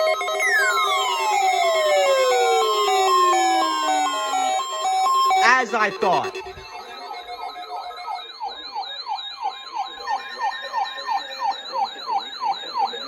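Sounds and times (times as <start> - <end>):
falling electronic siren sweep: 0.1 - 12.9
high warbling tone: 5.3 - 7.3.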